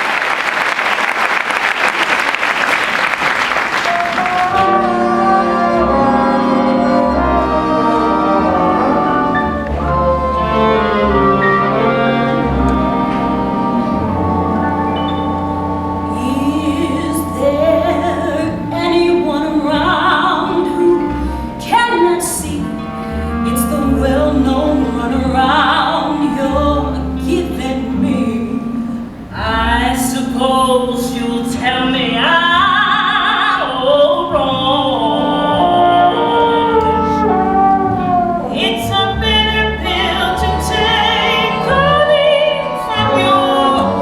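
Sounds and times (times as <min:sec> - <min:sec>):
band accompaniment: 0:03.6 - 0:25.1, 0:35.0 - 0:44.0
person singing with vibrato: 0:03.8 - 0:11.1, 0:13.6 - 0:44.0.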